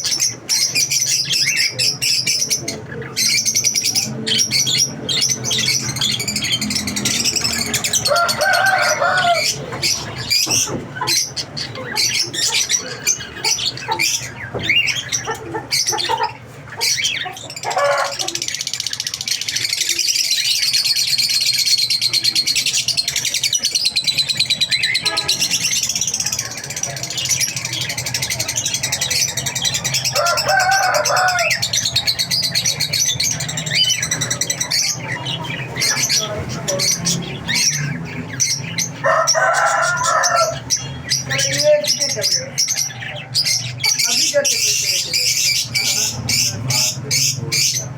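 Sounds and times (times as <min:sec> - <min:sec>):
loud low bird calls: 0:00.0 - 0:47.9
lovebirds chirping and twittering: 0:00.0 - 0:47.9.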